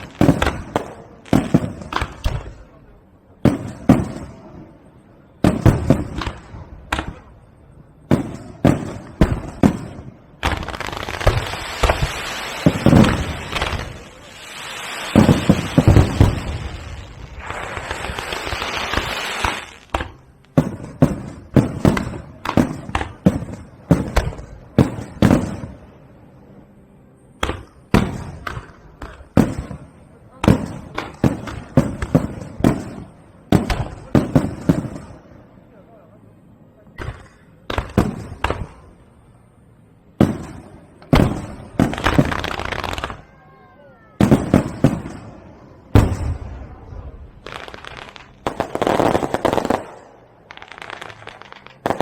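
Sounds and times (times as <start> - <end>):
aerial fireworks bursting: 0.0 - 2.8, 8.0 - 25.9, 27.4 - 35.3, 40.2 - 43.4, 44.2 - 52.0
fireworks crackling: 0.0 - 2.8, 3.4 - 4.8, 5.4 - 26.0, 27.4 - 35.4, 37.6 - 39.1, 40.2 - 52.0.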